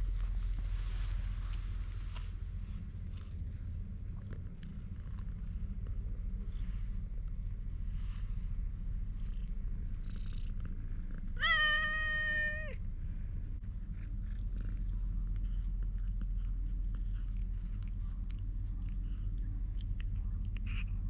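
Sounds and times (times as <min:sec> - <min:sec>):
cat meowing: 0:11.4 - 0:12.8.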